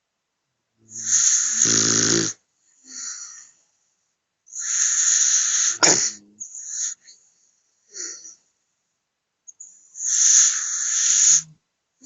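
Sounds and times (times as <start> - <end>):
dog snoring: 0.9 - 3.5, 4.5 - 7.1, 10.0 - 11.6.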